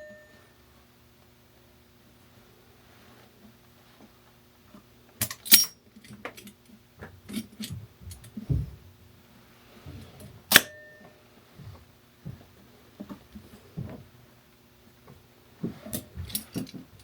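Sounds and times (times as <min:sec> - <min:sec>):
sharp ringing metallic knocks: 0:00.0 - 0:00.4
metal pipe fittings clinking: 0:05.2 - 0:05.8.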